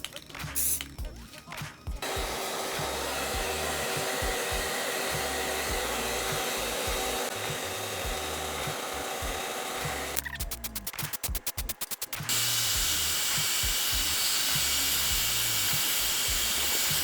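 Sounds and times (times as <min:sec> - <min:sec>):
soft background music: 0:00.0 - 0:17.0
hair dryer blowing: 0:02.0 - 0:10.2, 0:11.9 - 0:17.0.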